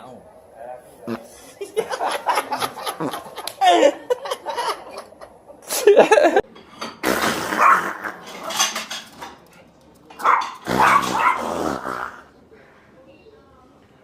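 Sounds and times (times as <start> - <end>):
dog barking: 10.2 - 11.5.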